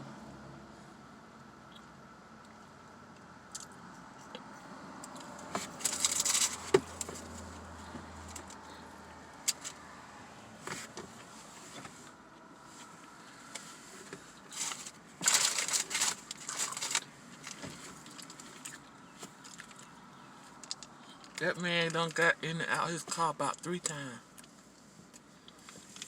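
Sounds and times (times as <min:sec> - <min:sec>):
wrapper crinkling and crunching: 0:05.7 - 0:07.0, 0:14.5 - 0:18.8.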